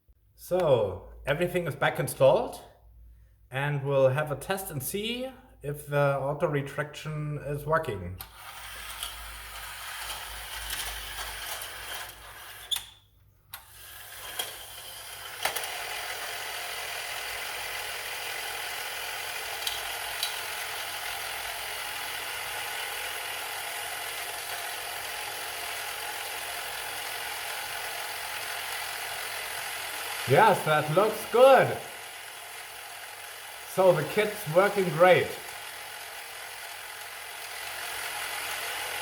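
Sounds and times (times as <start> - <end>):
toy motor whirring: 8.2 - 39.0.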